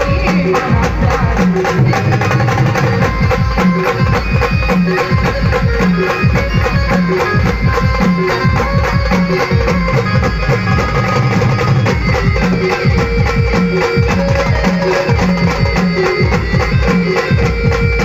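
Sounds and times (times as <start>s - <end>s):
fast drum beat: 0.0s - 18.0s
held melody notes: 3.1s - 18.0s.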